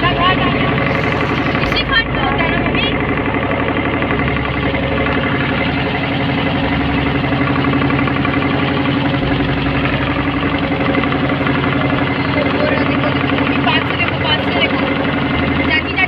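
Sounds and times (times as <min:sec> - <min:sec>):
motorboat engine running: 0:00.0 - 0:16.0.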